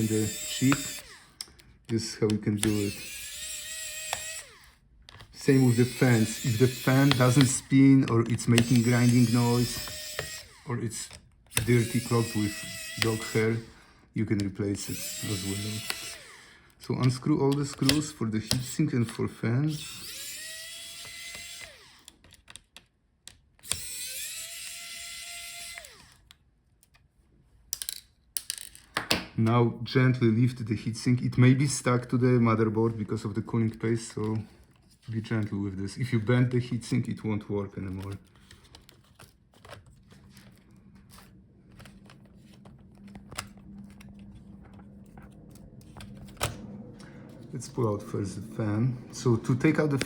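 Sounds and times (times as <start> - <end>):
electric screwdriver whining: 0.0 - 22.4, 23.6 - 26.3
clicks and rustles of handled parts: 25.7 - 29.2, 37.8 - 46.6
low steady hum: 39.8 - 50.0.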